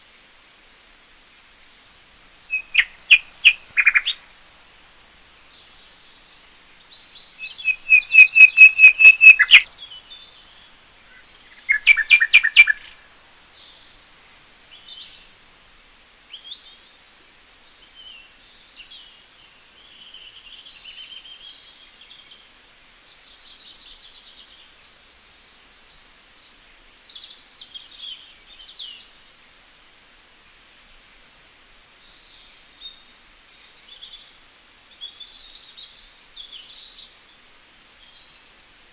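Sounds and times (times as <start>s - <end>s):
birds calling and singing: 1.6s - 10.4s, 11.0s - 15.2s.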